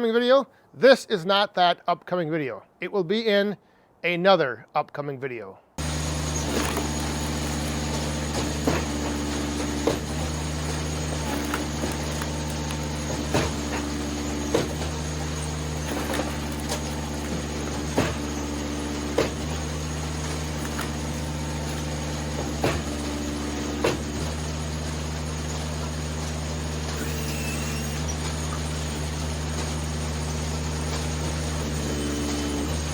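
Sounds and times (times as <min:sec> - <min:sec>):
sharp knocks of wood splitting: 0:05.8 - 0:24.4
hydraulic wood splitter running: 0:05.8 - 0:32.9.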